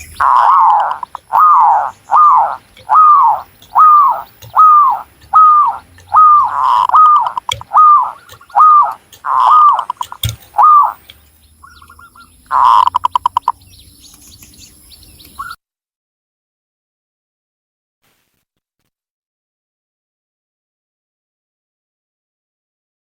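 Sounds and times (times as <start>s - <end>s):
dove cooing: 0.0s - 11.0s, 11.6s - 13.6s.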